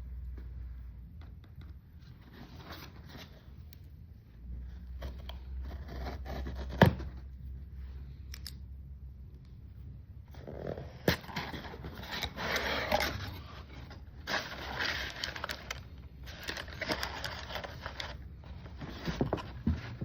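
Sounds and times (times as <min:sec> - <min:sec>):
packaging rustling and scraping: 0:10.3 - 0:20.0.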